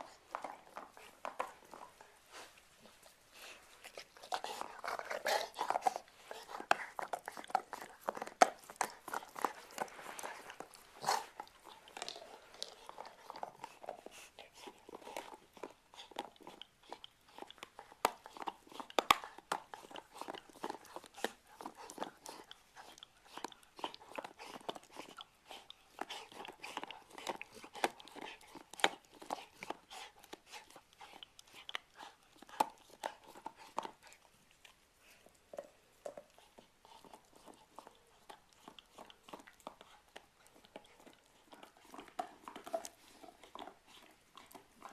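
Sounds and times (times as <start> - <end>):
dog chewing something hard: 0.0 - 44.9.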